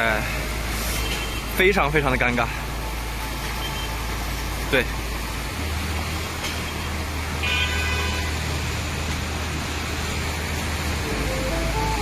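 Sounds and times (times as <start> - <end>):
brief higher-pitched sound: 11.0 - 12.0.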